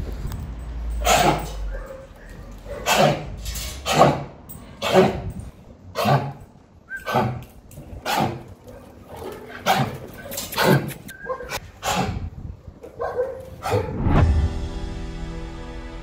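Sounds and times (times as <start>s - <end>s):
dog coughing: 1.0s - 1.6s, 2.7s - 6.4s, 7.0s - 7.4s, 8.0s - 8.5s, 11.8s - 12.3s.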